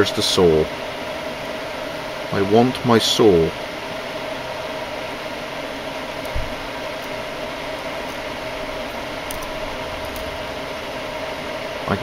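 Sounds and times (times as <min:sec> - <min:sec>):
whirring background hum: 0:00.0 - 0:12.0
soft low thump: 0:06.3 - 0:06.6.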